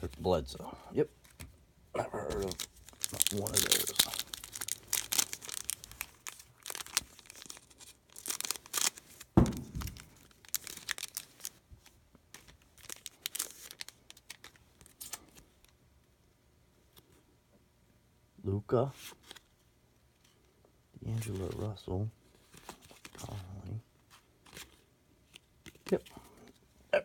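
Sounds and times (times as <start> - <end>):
wrappers tearing and crinkling: 2.3 - 11.6, 12.4 - 15.4
low thud: 9.4 - 10.1.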